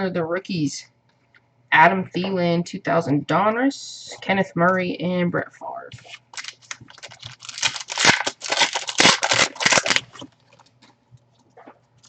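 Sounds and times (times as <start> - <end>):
foil wrapper tearing and crinkling: 6.0 - 10.7.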